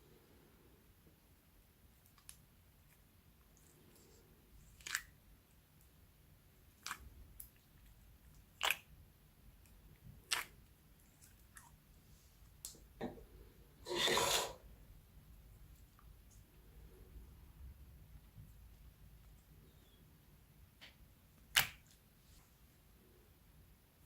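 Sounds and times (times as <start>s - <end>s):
sticky slime pops: 21.4s - 22.0s.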